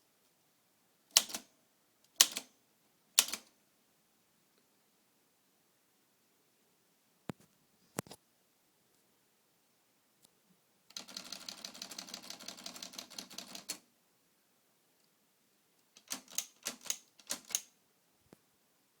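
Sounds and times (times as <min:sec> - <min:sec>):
manual typewriter clacking: 0:01.2 - 0:01.5, 0:02.2 - 0:02.5, 0:03.2 - 0:03.5, 0:10.9 - 0:13.8, 0:16.0 - 0:17.7.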